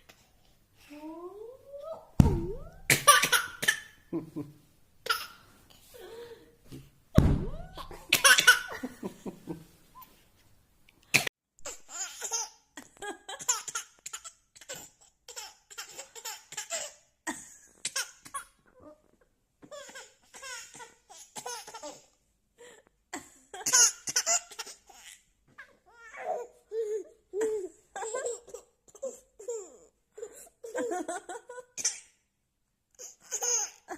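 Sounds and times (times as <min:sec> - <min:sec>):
baby laughing: 0:02.6 - 0:04.0, 0:05.0 - 0:05.4, 0:07.6 - 0:08.9, 0:33.0 - 0:33.9.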